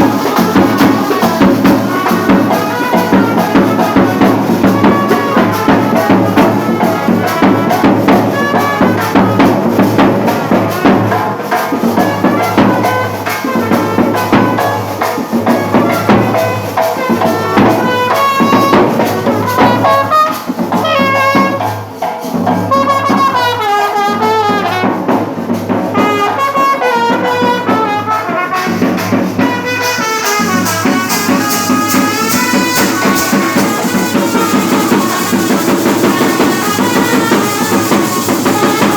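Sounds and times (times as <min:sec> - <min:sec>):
shaker rattle: 0:00.0 - 0:05.4, 0:29.0 - 0:38.9
brass band melody: 0:00.0 - 0:38.9
steady drum beat: 0:00.0 - 0:38.9.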